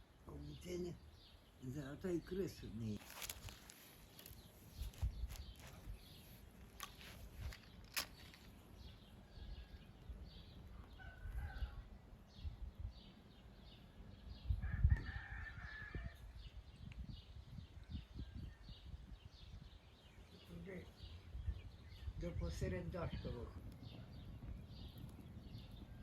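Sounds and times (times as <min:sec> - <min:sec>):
rooster crowing: 0:10.9 - 0:11.9, 0:14.6 - 0:16.3.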